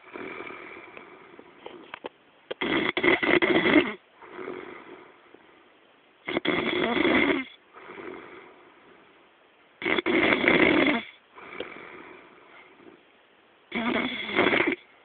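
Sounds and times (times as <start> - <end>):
man snoring: 0.0 - 1.3, 2.6 - 5.2, 6.3 - 8.6, 9.8 - 12.3, 13.7 - 14.8
soft breath: 0.0 - 2.0, 11.3 - 13.1.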